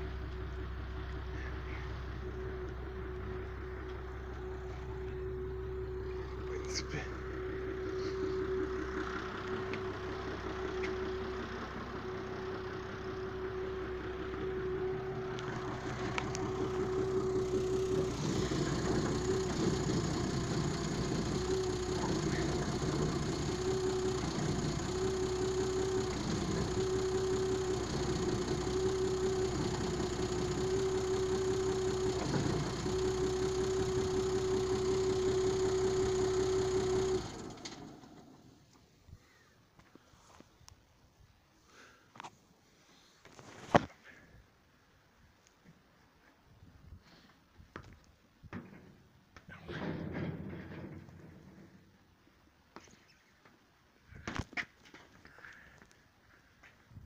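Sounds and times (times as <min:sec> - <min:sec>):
car engine running: 0:00.0 - 0:38.7
constant whine: 0:00.0 - 0:42.3.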